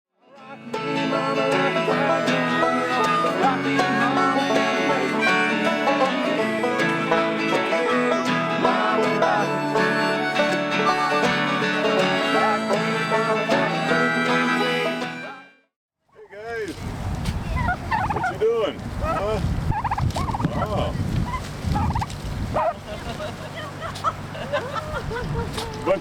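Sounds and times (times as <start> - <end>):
instrumental music: 0.6 - 15.6.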